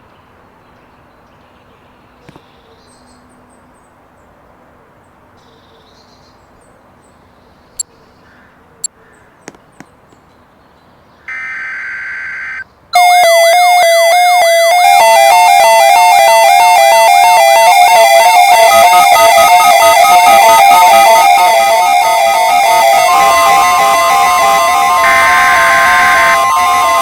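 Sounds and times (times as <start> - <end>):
data tones burst: 11.3 - 27.0
electronic alert signal sweeps: 11.3 - 27.0
two-pitch alternating tones: 11.3 - 27.0.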